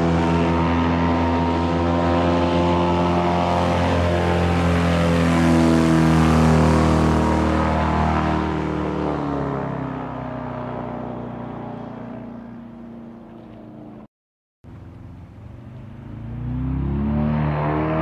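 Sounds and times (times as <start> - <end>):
airboat engine and propeller: 0.0 - 18.0.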